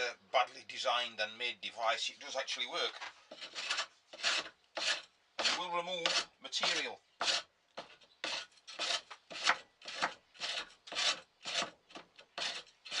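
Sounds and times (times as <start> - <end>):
hand plane shaving wood: 3.3 - 13.0.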